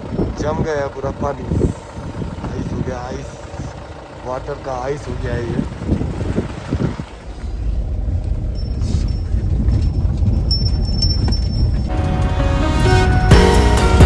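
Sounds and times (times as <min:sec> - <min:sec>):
vehicle rumbling: 0:00.0 - 0:14.0
background music: 0:11.9 - 0:14.0.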